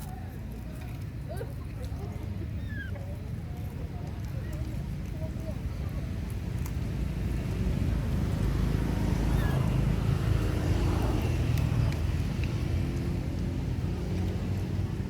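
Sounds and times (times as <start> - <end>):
vehicle engine passing: 7.3 - 15.0.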